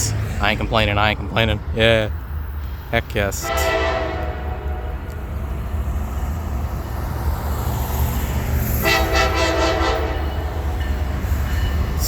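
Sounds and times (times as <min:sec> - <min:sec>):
freight train rumbling past: 0:00.0 - 0:12.0
train air horn blast: 0:03.4 - 0:05.2, 0:08.8 - 0:10.8.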